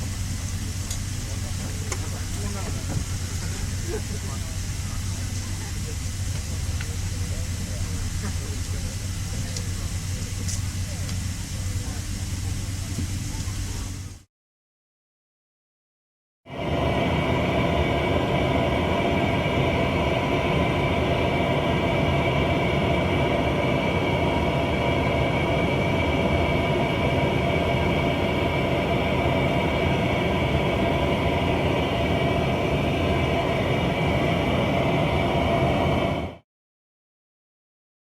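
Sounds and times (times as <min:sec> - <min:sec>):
aircraft drone: 0:00.0 - 0:14.2, 0:16.5 - 0:36.4.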